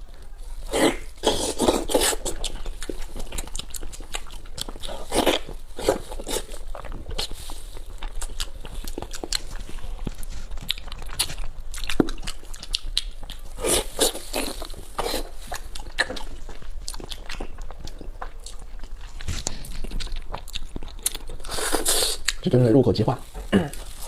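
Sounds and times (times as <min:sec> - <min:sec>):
person chewing wetly: 0:00.2 - 0:24.0.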